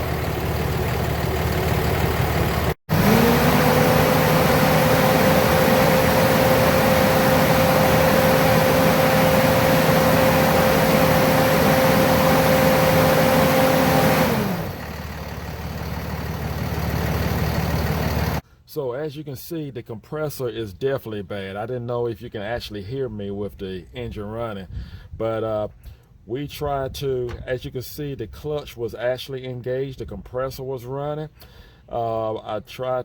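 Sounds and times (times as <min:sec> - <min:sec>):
car engine revving: 0:02.9 - 0:18.4.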